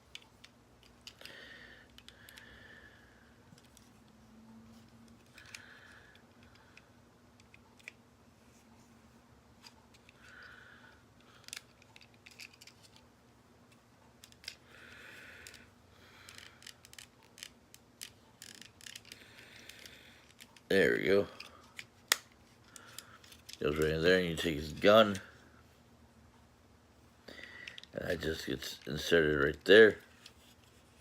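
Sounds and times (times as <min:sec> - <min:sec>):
plastic toy parts clicking: 0:00.0 - 0:02.4, 0:05.1 - 0:08.0, 0:11.2 - 0:13.0, 0:13.7 - 0:14.6, 0:15.4 - 0:20.7, 0:21.3 - 0:23.8, 0:27.6 - 0:28.0.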